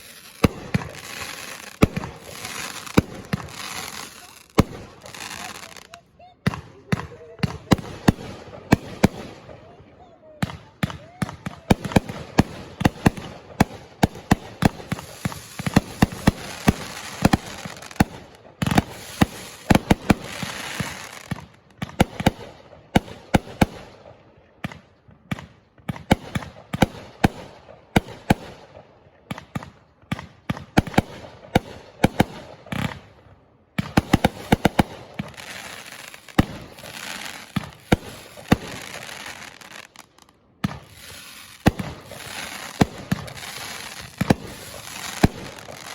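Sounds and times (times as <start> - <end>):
fireworks banging: 0.0 - 9.4, 11.7 - 22.4, 33.8 - 45.9
fireworks crackling: 0.0 - 9.6, 11.3 - 23.8, 33.8 - 45.9.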